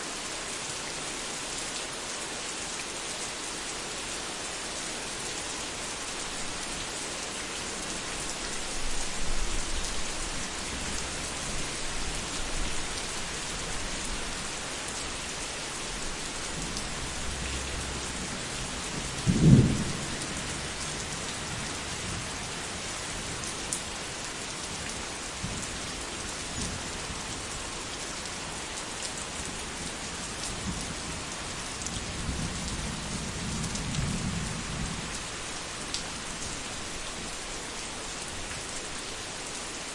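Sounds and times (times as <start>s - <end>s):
steady rain falling: 0.0s - 39.9s
low rumbles of thunder: 16.5s - 22.4s, 32.0s - 35.2s
sharp thunderclap: 19.2s - 20.0s.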